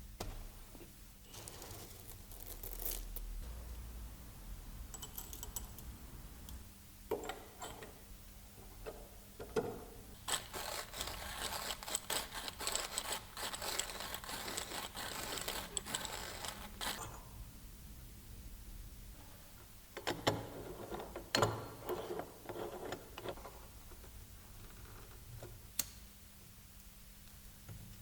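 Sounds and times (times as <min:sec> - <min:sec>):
coffee grinder crunching beans: 0:01.3 - 0:03.3, 0:10.2 - 0:17.1.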